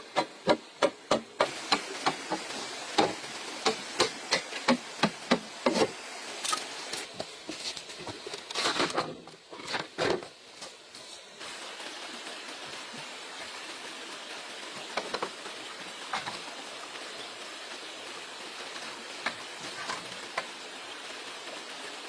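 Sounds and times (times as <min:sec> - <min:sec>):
hand tool striking bamboo: 0:00.1 - 0:05.9
rough scraping: 0:05.7 - 0:10.2.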